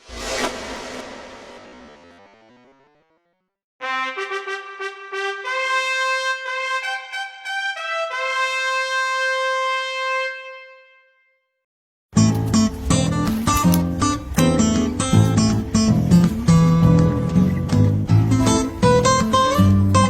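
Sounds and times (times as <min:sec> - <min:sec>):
solo trumpet call: 0:03.8 - 0:11.3.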